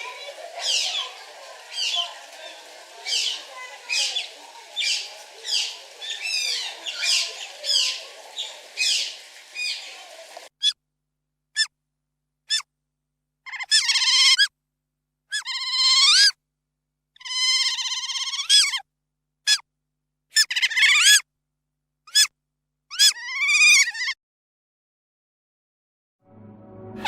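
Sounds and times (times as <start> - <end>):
otters chirping and squealing: 0.0 - 10.0.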